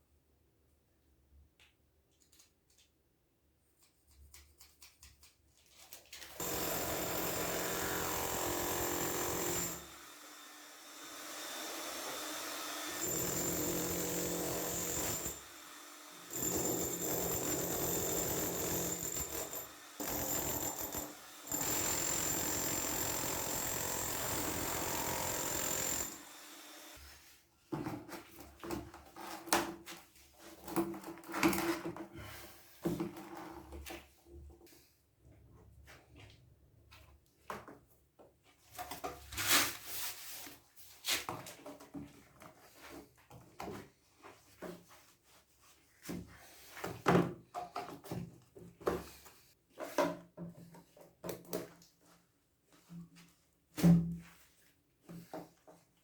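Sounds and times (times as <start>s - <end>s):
electric power tool whining: 6.4s - 27.0s.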